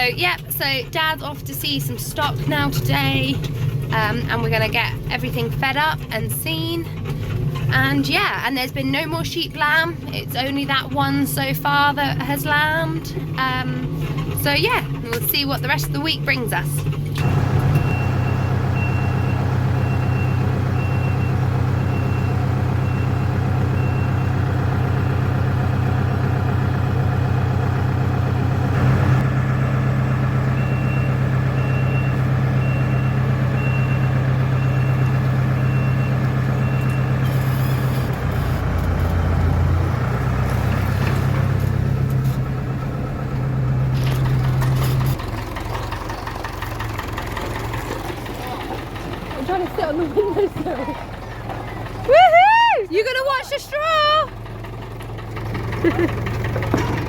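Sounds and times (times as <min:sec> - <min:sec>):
diesel engine under load: 0:00.0 - 0:57.0
reversing alarm beeping: 0:17.2 - 0:24.6, 0:30.4 - 0:38.6.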